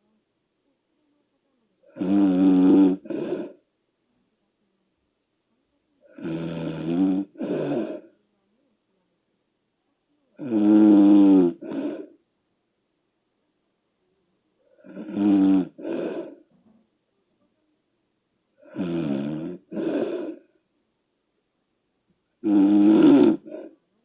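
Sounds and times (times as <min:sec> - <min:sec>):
person snoring loudly: 0:01.9 - 0:03.6, 0:06.1 - 0:08.1, 0:10.4 - 0:12.1, 0:14.8 - 0:16.4, 0:18.6 - 0:20.4, 0:22.4 - 0:23.8.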